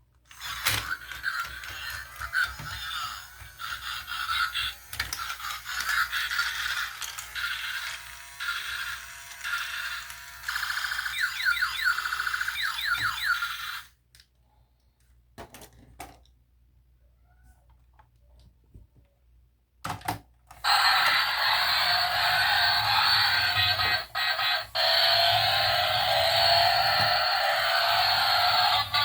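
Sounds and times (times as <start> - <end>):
toy electronic sound effects and melody: 0.4 - 13.9, 20.6 - 29.0
falling siren-like sweeps: 20.7 - 29.0.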